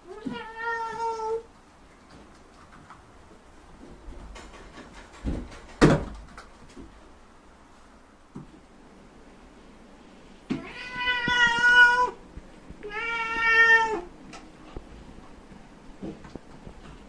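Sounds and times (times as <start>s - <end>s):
cat meowing: 0.1s - 1.4s, 10.5s - 12.2s, 12.8s - 14.1s.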